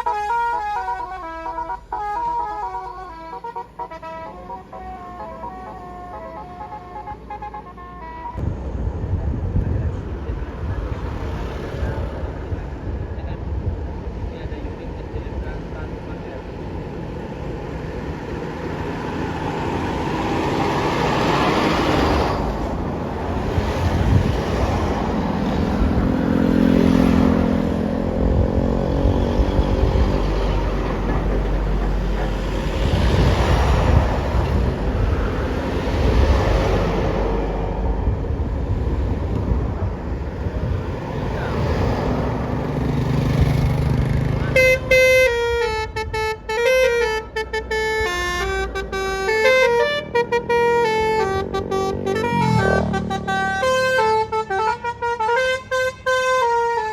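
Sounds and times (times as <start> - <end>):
bus musical horn melody: 0.0 - 8.4, 44.4 - 56.9
road traffic passing: 0.0 - 56.9.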